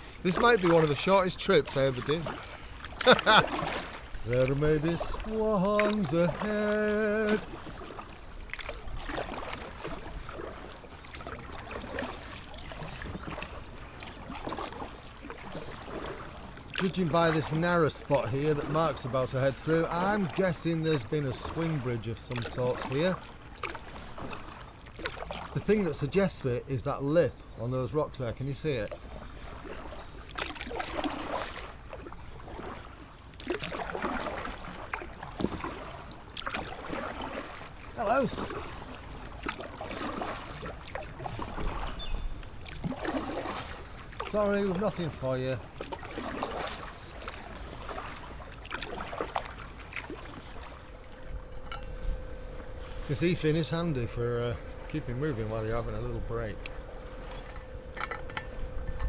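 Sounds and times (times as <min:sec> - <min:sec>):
water splashing against kayak: 0:00.0 - 0:59.0
paddle swishes: 0:45.7 - 0:55.0
wind on microphone: 0:49.6 - 0:59.0.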